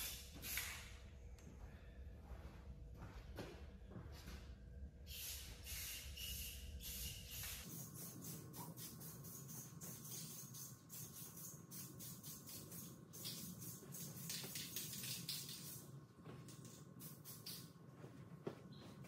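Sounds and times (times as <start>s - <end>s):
aerosol can spraying: 6.8s - 15.8s.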